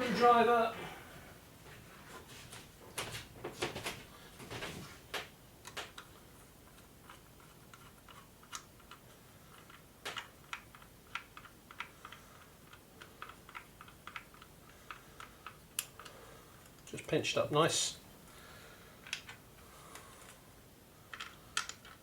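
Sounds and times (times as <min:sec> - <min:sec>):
screwdriver clicks and taps: 0:09.6 - 0:16.1
small parts being handled: 0:21.1 - 0:22.0.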